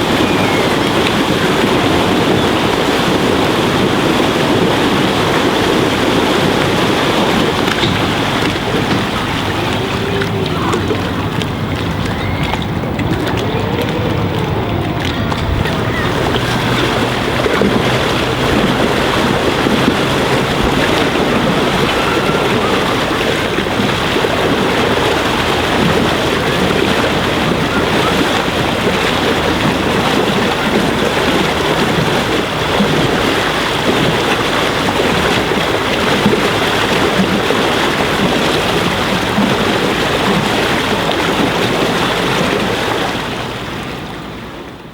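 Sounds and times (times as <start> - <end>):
wind noise on microphone: 0.0 - 44.7
water rushing along hull: 0.0 - 44.9.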